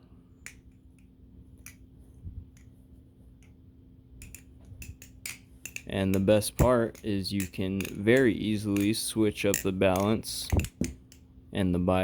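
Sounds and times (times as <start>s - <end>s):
butterfly knife clicking: 4.2s - 11.2s.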